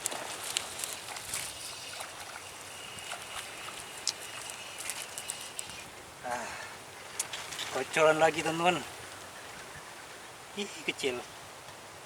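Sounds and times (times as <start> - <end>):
light water splashing: 0.0 - 9.0.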